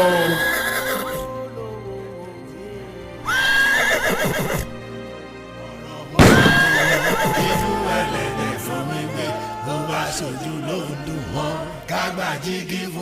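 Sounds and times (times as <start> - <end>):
horse whinnying: 0.2 - 1.2, 3.3 - 4.7, 6.2 - 8.1.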